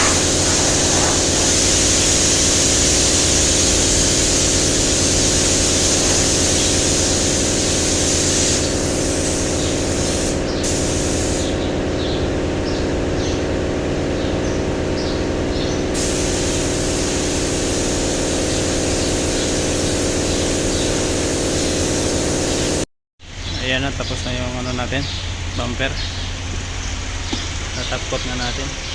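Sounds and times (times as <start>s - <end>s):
steady machine hum: 0.0s - 8.0s
paint spray gun hissing: 0.0s - 11.7s, 16.0s - 22.9s.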